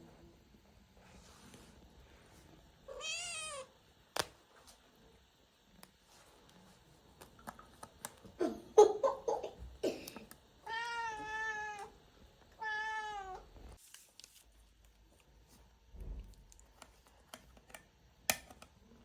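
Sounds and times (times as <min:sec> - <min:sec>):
cat meowing: 0:02.9 - 0:03.7, 0:10.6 - 0:12.0, 0:12.6 - 0:13.5.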